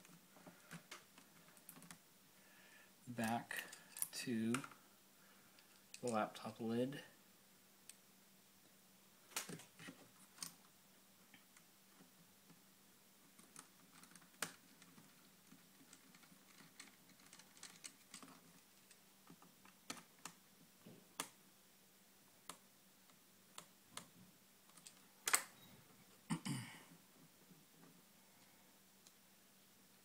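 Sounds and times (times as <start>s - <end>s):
small parts clattering: 13.9s - 20.0s.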